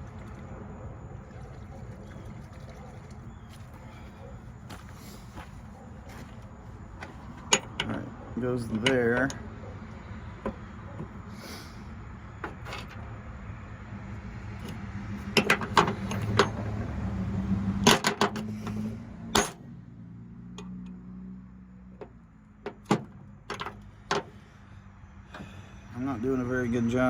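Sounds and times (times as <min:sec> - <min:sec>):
metal parts clinking: 0:07.4 - 0:08.0, 0:14.6 - 0:16.8, 0:19.4 - 0:19.6.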